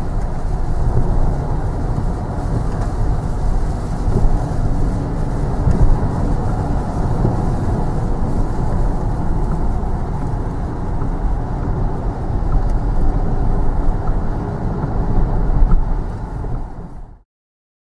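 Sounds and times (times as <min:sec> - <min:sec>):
car engine and road rumble: 0:00.0 - 0:17.2.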